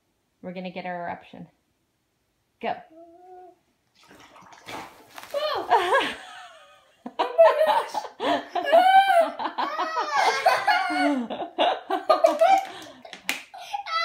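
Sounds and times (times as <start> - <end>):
children laughing and squealing: 7.4 - 11.5, 13.6 - 14.0.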